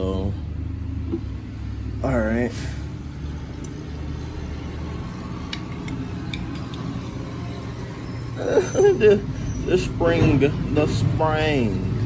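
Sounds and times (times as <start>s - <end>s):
vehicle engine rumbling: 0.0s - 12.0s
metal brake parts clicking: 5.5s - 7.0s.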